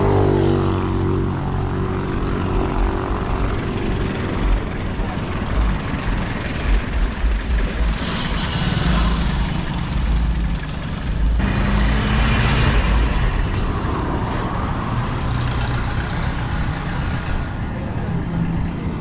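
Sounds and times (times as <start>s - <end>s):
heavy vehicle engine rumbling: 0.0s - 19.0s
short bursts of hiss: 8.0s - 9.1s.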